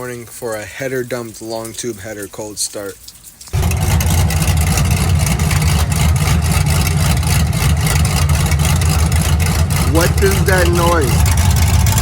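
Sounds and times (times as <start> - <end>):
loud open-header engine idling: 3.6 - 12.0.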